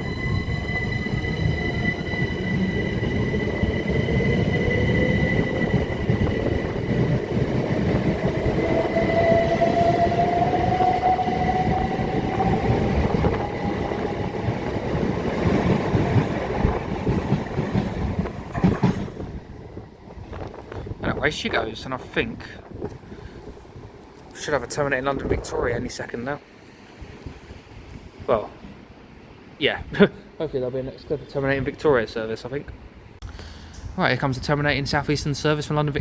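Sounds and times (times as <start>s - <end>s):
electric train traction whine: 0.0s - 20.7s
train wheels rumbling: 0.0s - 26.2s.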